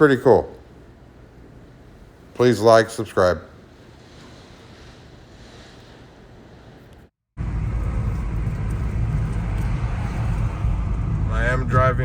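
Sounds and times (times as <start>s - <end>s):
car road and wind noise: 7.4s - 12.0s.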